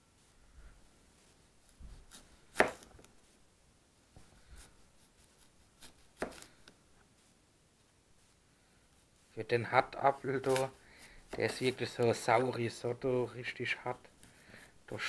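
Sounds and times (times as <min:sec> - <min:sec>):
knife scraping and rustling: 0:09.8 - 0:12.8.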